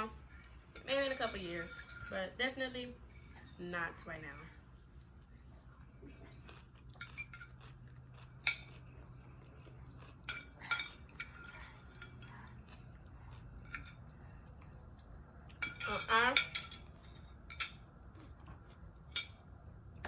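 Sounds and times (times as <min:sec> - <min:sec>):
faint steady hum: 0:00.0 - 0:20.0
cutlery clinking against a dish: 0:00.3 - 0:02.4, 0:06.9 - 0:08.9, 0:10.1 - 0:12.4, 0:13.6 - 0:14.1, 0:15.5 - 0:17.9, 0:19.0 - 0:19.5.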